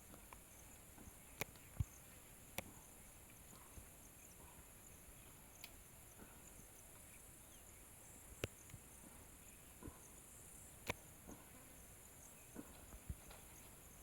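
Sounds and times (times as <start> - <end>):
soft clicks: 5.6 - 5.8.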